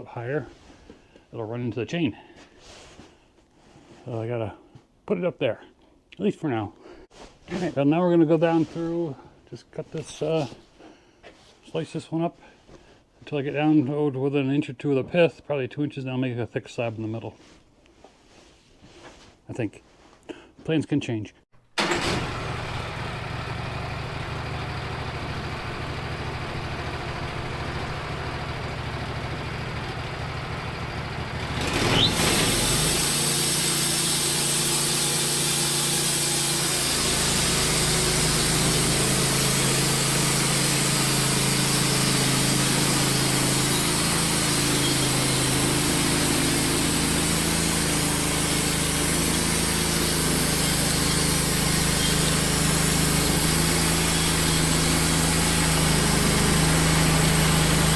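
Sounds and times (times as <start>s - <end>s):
sawmill engine running: 21.8s - 57.9s
band saw cutting log: 31.3s - 57.9s.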